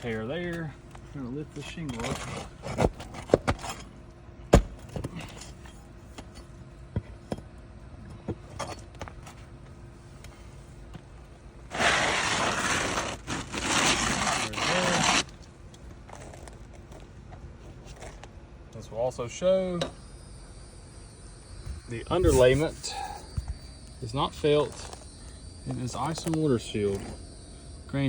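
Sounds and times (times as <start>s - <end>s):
roof shingle scraping and tearing: 1.9s - 3.9s, 11.7s - 15.4s.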